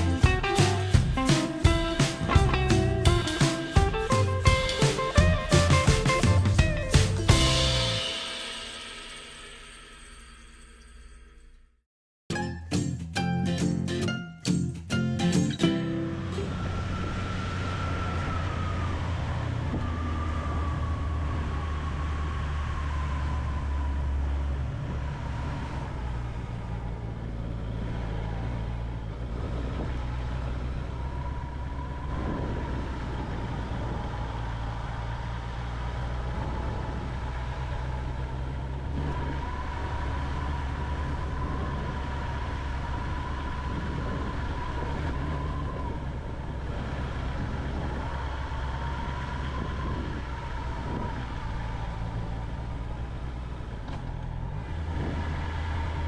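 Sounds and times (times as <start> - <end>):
motorcycle engine running: 0.0 - 8.8
wind noise: 16.4 - 34.4, 36.3 - 53.9, 54.5 - 56.0.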